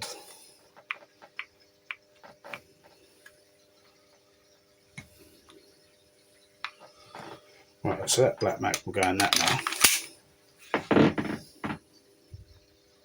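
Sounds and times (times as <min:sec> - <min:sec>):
faint steady hum: 0:00.0 - 0:13.0
pistol parts clicking: 0:08.7 - 0:10.1.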